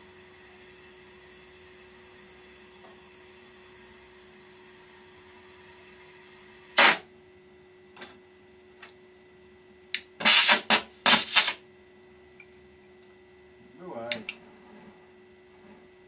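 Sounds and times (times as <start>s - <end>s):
harsh metalwork bursts: 6.8s - 7.0s, 10.2s - 11.6s.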